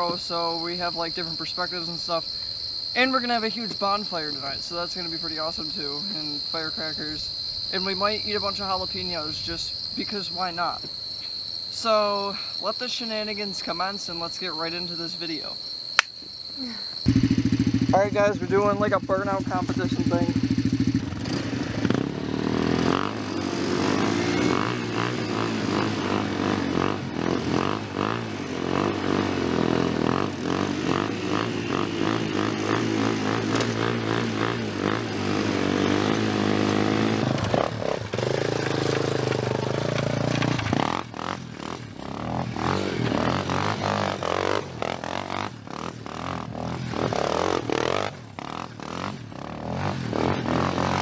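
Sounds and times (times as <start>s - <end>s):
quad engine revving: 17.1s - 51.0s.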